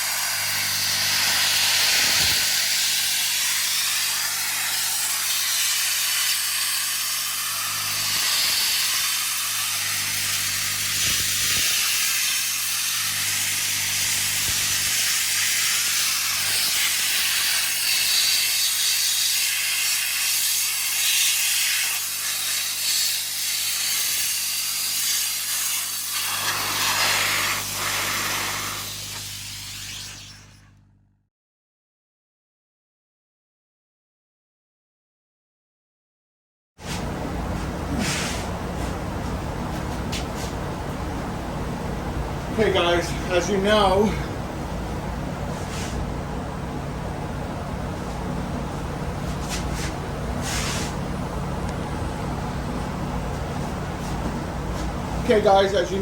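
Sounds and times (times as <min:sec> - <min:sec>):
compressor humming: 0:00.0 - 0:18.9, 0:24.9 - 0:31.1, 0:36.8 - 0:56.0
sandblaster nozzle hissing: 0:00.0 - 0:30.7, 0:37.9 - 0:38.9, 0:45.5 - 0:46.1, 0:49.3 - 0:51.1.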